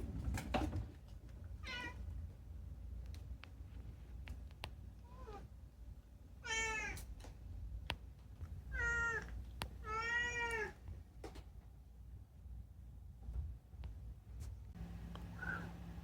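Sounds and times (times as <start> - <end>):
cat meowing: 6.4 - 7.0, 8.7 - 10.8.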